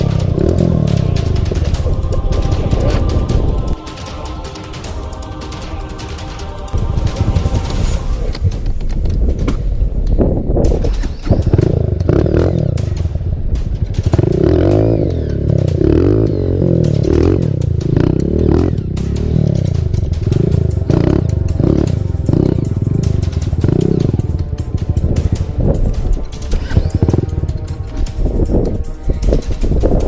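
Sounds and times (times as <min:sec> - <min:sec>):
dirt bike engine revving: 0:00.0 - 0:07.6, 0:13.9 - 0:25.5.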